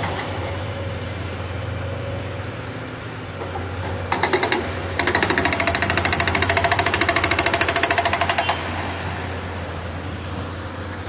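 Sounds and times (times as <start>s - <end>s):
diesel engine running: 0.0s - 11.0s
hydraulic breaker hammering: 3.3s - 9.6s.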